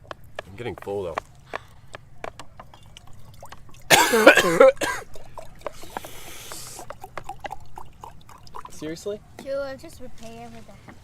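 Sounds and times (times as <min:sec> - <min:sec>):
person coughing: 0:03.9 - 0:05.1
breathy hiss: 0:05.7 - 0:06.9.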